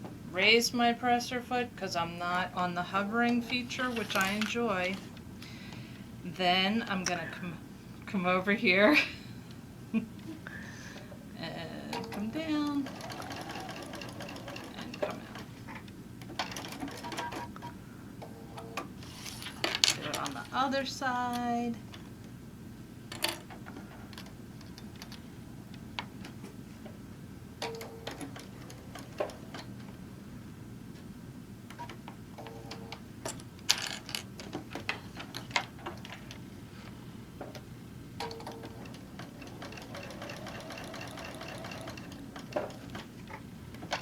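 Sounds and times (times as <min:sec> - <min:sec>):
sewing machine stitching: 0:03.3 - 0:04.7, 0:11.9 - 0:17.5, 0:38.2 - 0:44.0.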